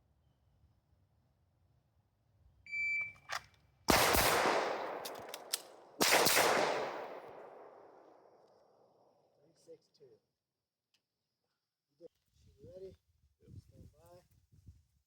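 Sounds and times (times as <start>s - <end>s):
pistol shots: 3.9s - 8.4s.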